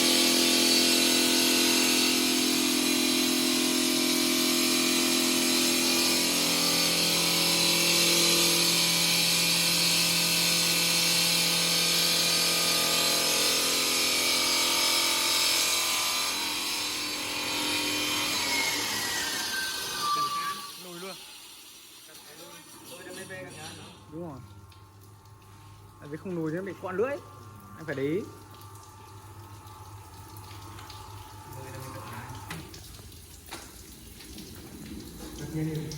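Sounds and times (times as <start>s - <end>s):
stone-cutting saw whining: 0.0s - 24.4s, 26.1s - 28.8s.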